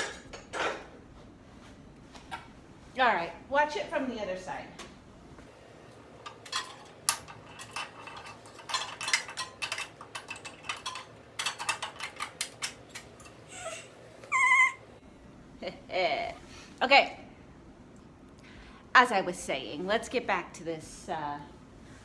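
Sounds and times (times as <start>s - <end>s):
metal parts and tools clinking: 6.2s - 13.4s.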